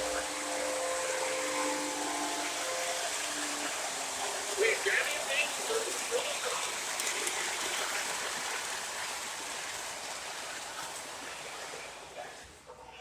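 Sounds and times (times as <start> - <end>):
model train hissing: 0.0 - 8.7.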